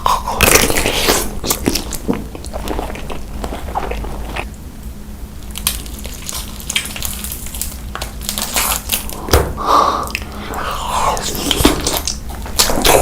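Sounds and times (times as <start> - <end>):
crunching crisp food: 0.0 - 4.6, 5.4 - 9.3.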